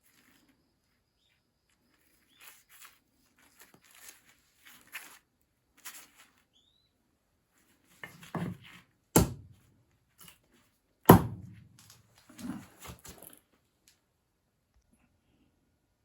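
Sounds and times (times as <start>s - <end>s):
soft scraping and rustling: 0.0s - 6.7s, 11.8s - 13.6s
sharp wooden knocks: 9.2s - 9.5s, 11.1s - 11.7s.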